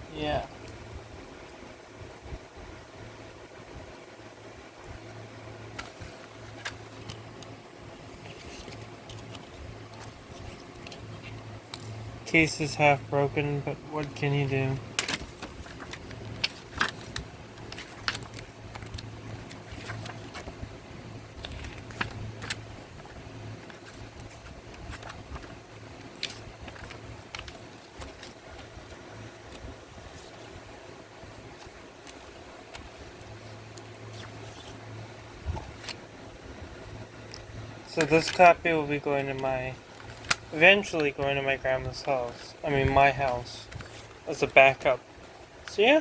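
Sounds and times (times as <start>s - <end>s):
steady low hum: 0.0s - 46.0s
plastic cd case clicking: 15.0s - 20.5s, 39.9s - 40.5s.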